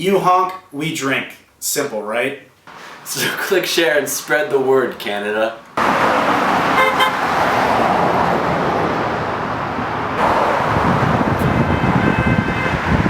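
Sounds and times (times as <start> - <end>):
passing road traffic: 2.7 - 13.0
car horn toot: 6.7 - 7.3, 11.3 - 13.0.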